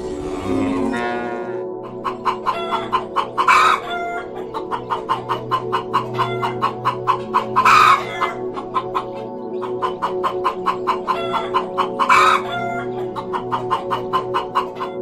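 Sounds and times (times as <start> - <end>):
background music with sustained tones: 0.0 - 15.0
chickens clucking: 0.0 - 15.0
chicken squawking: 0.3 - 15.0.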